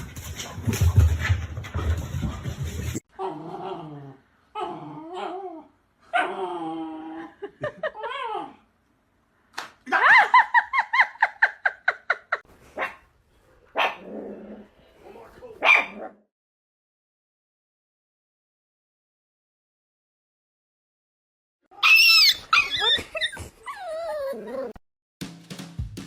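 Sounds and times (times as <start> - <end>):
dog yipping: 15.6 - 16.1, 21.8 - 24.4
dog whining: 21.8 - 24.8.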